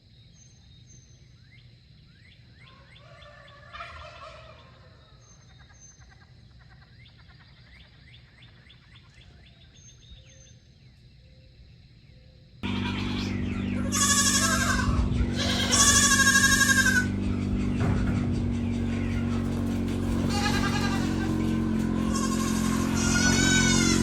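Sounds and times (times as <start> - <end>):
gobble-like call: 2.7 - 5.0
poultry chirping: 12.6 - 24.0.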